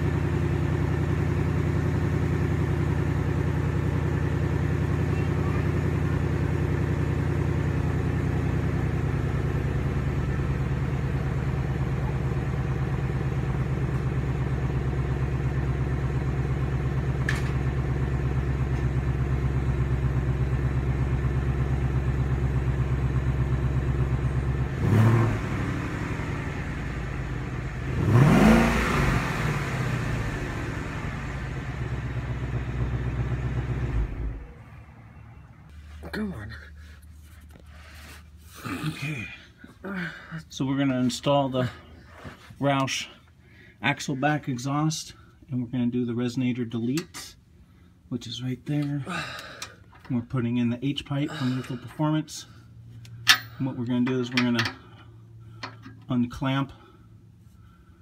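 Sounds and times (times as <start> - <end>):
car engine revving: 0.0 - 35.0
car engine idling: 0.0 - 45.5, 46.2 - 58.0.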